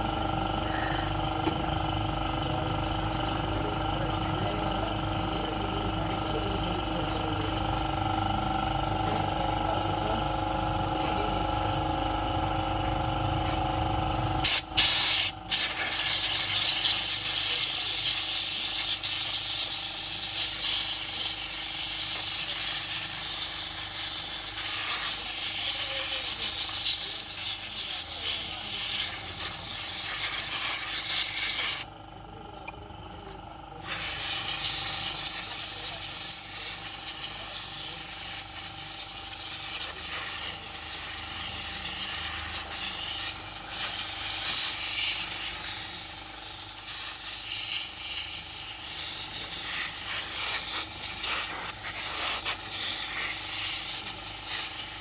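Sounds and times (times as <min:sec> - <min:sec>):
steady machine hum: 0:00.0 - 0:55.0
high-pressure spray jet hissing: 0:14.4 - 0:31.8, 0:33.8 - 0:55.0.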